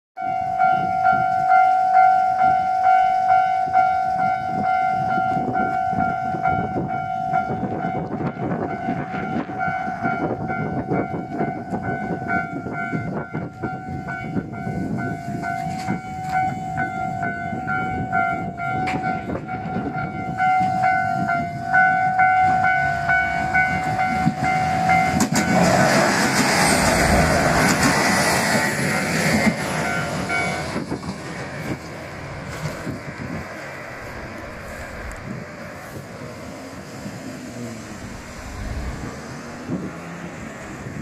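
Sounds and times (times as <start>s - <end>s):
steady low rumble: 25.8s - 30.4s, 32.2s - 41.0s.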